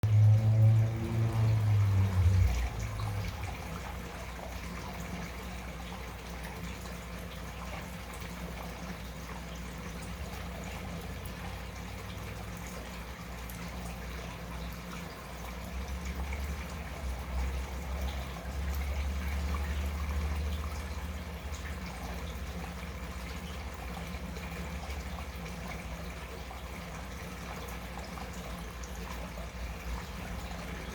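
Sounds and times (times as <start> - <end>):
low rumble: 0.0 - 3.7
steady low hum: 0.0 - 30.9
water bubbling and trickling: 0.0 - 30.9.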